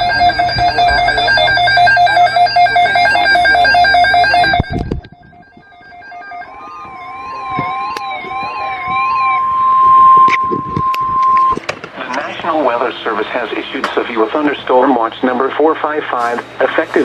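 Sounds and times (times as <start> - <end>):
warbling siren-like alert: 0.0 - 12.4
steady alarm tone: 0.0 - 14.3.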